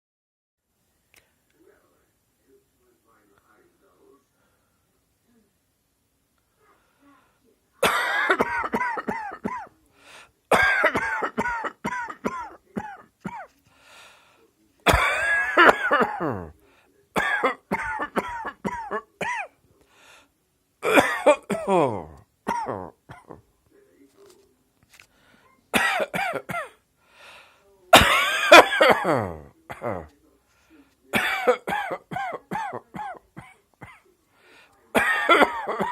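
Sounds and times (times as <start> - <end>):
person coughing: 7.8 - 9.7, 10.5 - 13.5, 14.9 - 16.5, 17.2 - 19.5, 20.8 - 23.4, 25.8 - 26.8, 27.9 - 30.1, 31.1 - 34.1, 34.9 - 35.9.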